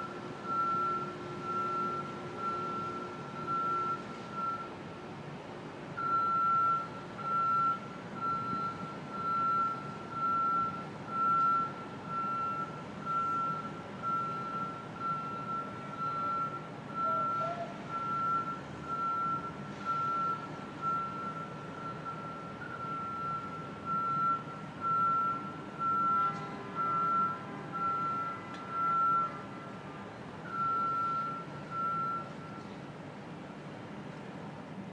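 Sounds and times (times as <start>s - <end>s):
backup alarm beeping: 6.0s - 29.4s, 30.5s - 32.6s.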